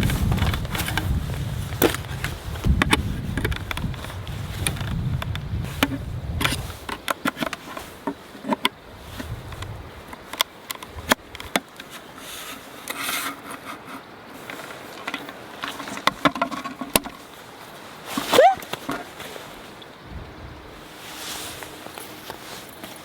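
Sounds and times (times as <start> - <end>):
wind rumble on microphone: 0.0 - 11.6, 19.5 - 21.9.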